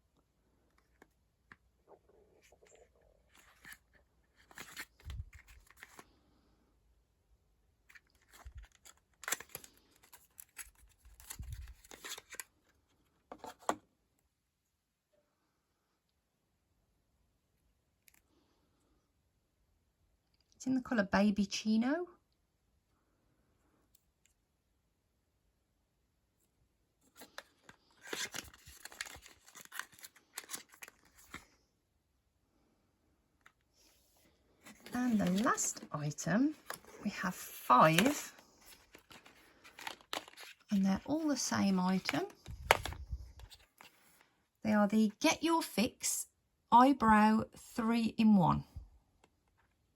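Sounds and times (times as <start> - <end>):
packaging rustling and crinkling: 2.5 - 6.1, 7.9 - 12.7, 27.2 - 31.5, 34.6 - 40.8, 41.4 - 44.2.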